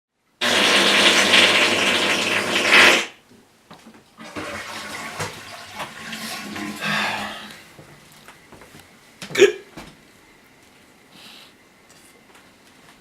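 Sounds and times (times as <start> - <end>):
toilet flushing: 0.4 - 3.2, 4.2 - 7.6.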